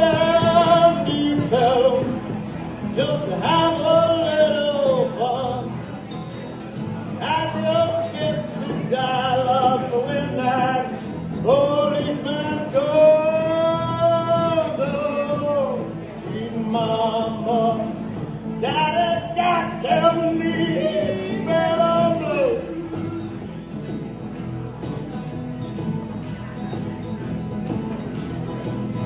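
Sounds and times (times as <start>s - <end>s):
man singing: 0.0s - 6.2s, 7.0s - 23.4s
acoustic guitar: 0.0s - 29.0s.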